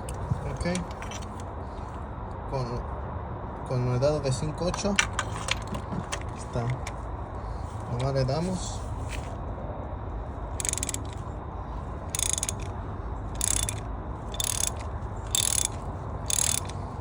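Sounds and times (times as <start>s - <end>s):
steady low hum: 5.4s - 17.0s
socket ratchet clicking: 10.6s - 11.2s, 12.1s - 12.8s, 13.4s - 16.8s.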